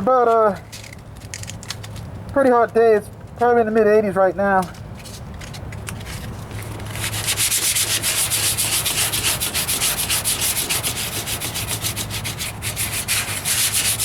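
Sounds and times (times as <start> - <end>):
sandpaper rubbing on metal: 6.6 - 14.0.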